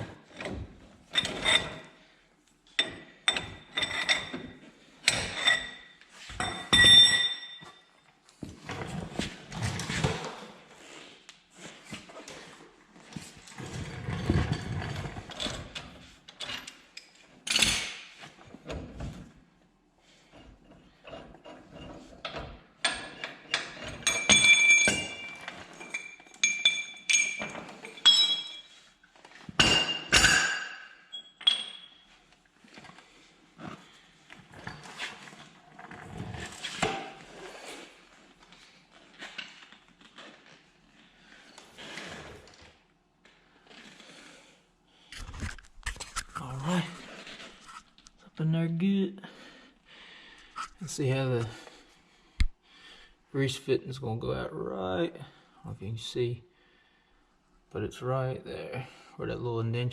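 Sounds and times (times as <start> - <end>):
steel tools clinking and knocking: 6.4 - 7.8, 22.2 - 28.8, 29.6 - 32.1.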